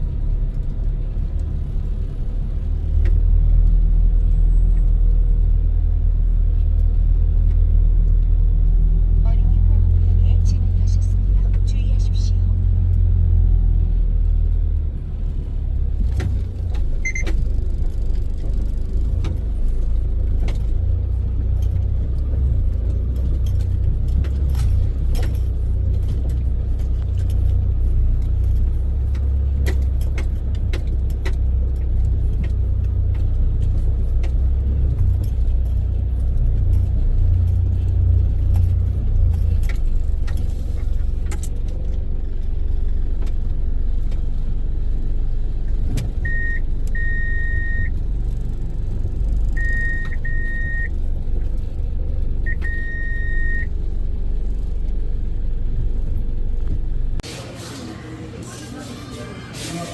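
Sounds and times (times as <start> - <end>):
car engine and road noise: 0.0 - 59.9
light clicks and rattles: 14.6 - 47.0.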